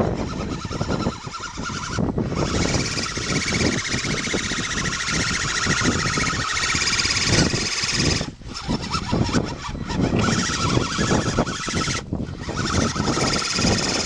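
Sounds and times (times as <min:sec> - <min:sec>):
electric motor and gears whining: 0:00.0 - 0:14.0.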